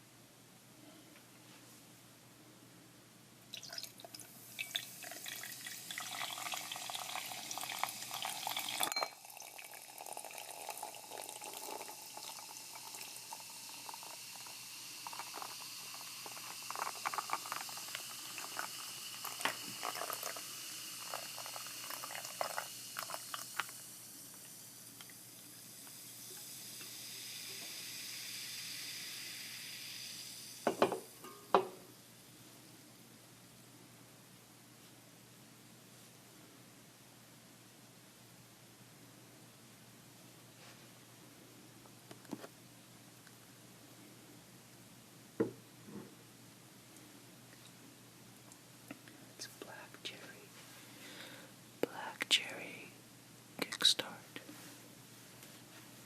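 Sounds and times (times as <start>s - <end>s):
drink fizzing with popping bubbles: 3.5s - 25.2s
drink pouring into glass: 3.5s - 25.2s.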